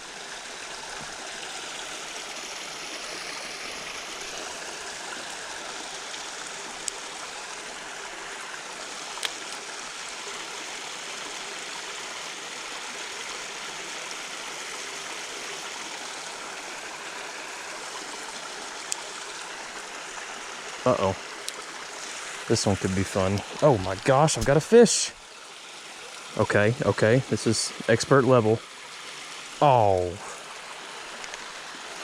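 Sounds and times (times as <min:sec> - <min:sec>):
creek water running: 0:00.0 - 0:32.0.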